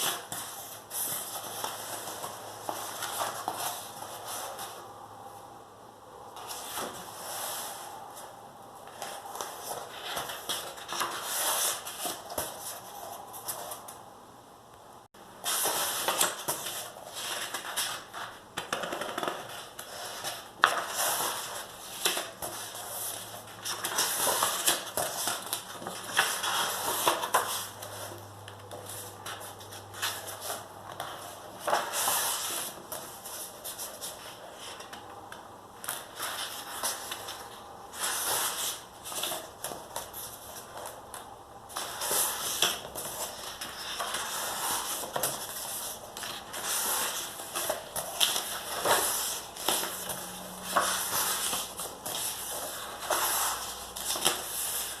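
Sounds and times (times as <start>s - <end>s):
paper rustling and scratching: 15.4s - 35.0s, 41.7s - 55.0s.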